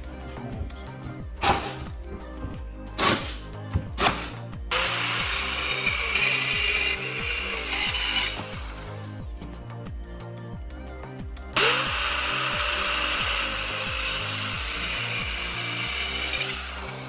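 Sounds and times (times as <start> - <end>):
nail gun shots: 1.4 - 1.9, 3.0 - 3.4, 4.0 - 4.4
power tool whining: 1.4 - 9.4, 11.6 - 17.0.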